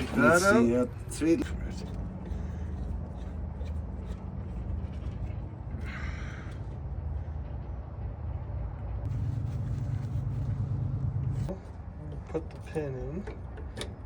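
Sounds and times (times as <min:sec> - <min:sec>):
truck engine idling: 0:00.0 - 0:14.0.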